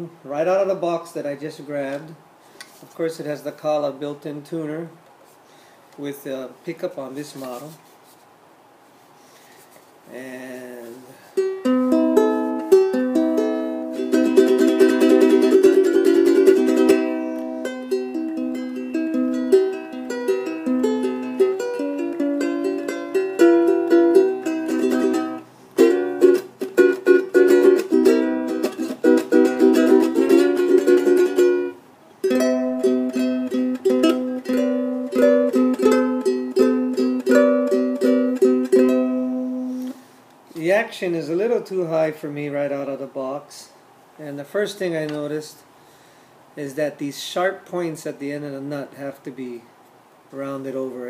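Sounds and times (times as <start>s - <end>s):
ukulele strummed and picked: 11.4s - 40.0s.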